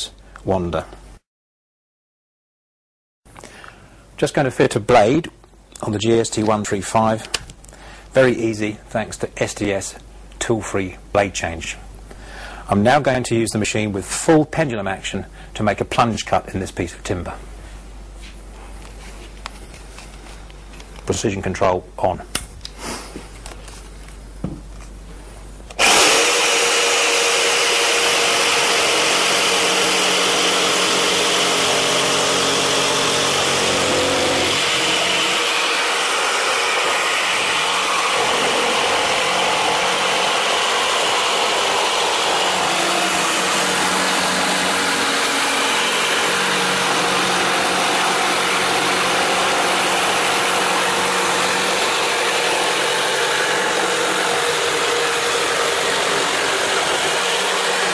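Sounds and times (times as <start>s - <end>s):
jigsaw cutting timber: 25.8s - 57.9s.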